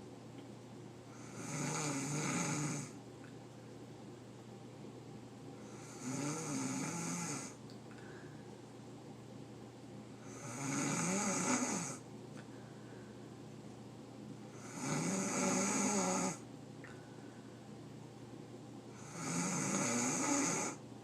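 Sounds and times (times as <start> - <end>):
person snoring: 1.1 - 3.0, 5.6 - 7.6, 10.2 - 12.0, 14.5 - 16.4, 19.0 - 20.8.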